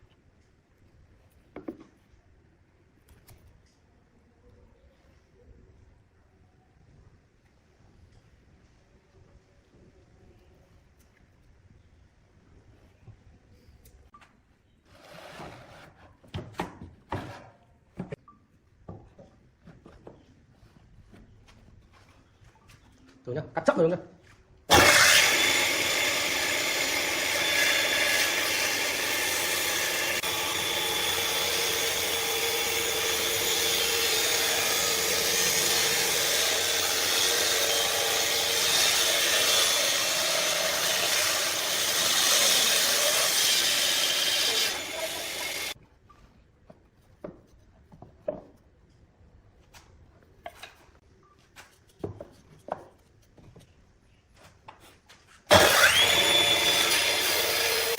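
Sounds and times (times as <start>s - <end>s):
table saw cutting wood: 24.7s - 45.8s, 55.5s - 57.9s.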